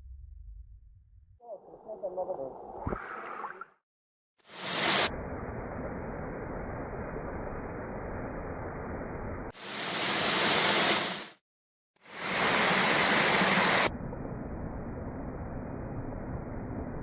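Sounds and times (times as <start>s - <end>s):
waterfall rushing water: 12.1s - 13.9s.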